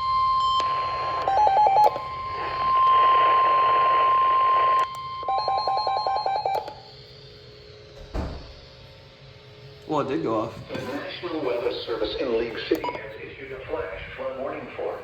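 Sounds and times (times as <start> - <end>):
steady high warning beep: 0.0 - 7.1, 10.8 - 14.3.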